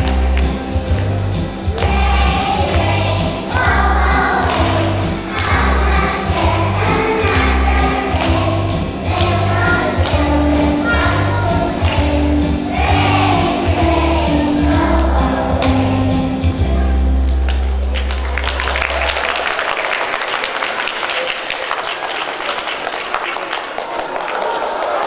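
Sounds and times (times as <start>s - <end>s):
group of voices singing: 0.0s - 16.8s.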